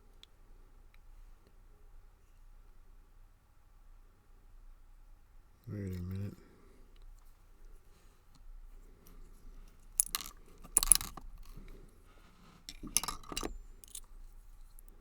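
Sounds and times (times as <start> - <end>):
metal lock parts clinking: 9.9 - 11.7, 12.7 - 14.9.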